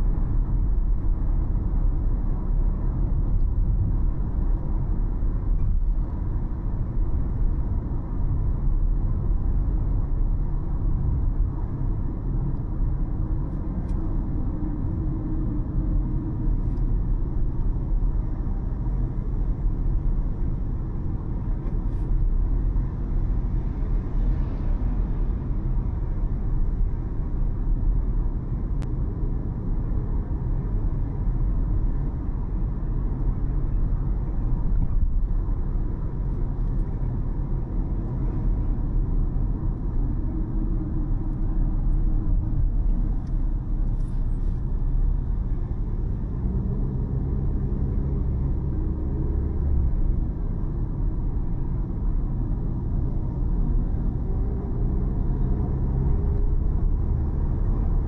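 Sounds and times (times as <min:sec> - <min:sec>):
car engine and road noise: 0:00.0 - 0:58.0.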